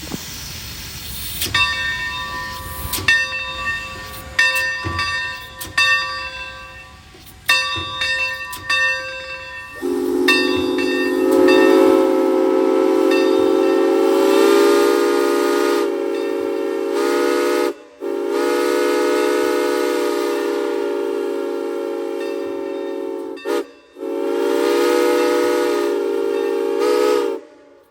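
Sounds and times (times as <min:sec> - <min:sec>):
chime steam whistle: 0:00.9 - 0:27.9
locomotive bell ringing: 0:01.4 - 0:15.0, 0:16.0 - 0:18.2, 0:21.5 - 0:24.2, 0:26.2 - 0:26.8.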